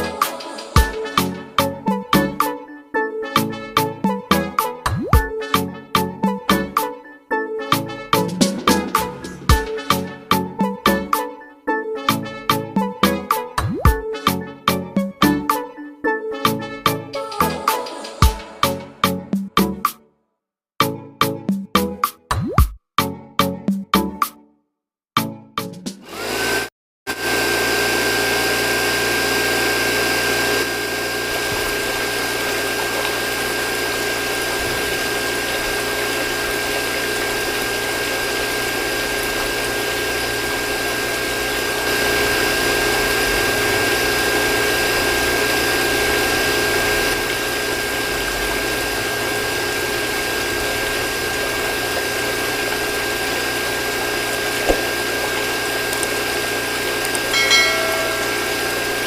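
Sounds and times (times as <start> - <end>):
small motor whine: 26.1 - 59.0
water pump rushing hiss: 27.4 - 59.0.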